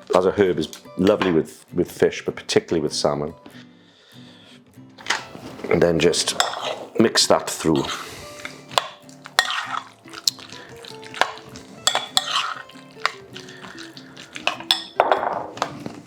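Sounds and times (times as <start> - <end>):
background music: 0.0 - 16.0
utensil stirring in a bowl: 6.2 - 7.0, 7.7 - 16.0
spoon knocking against bowl: 11.2 - 13.2, 14.5 - 15.6.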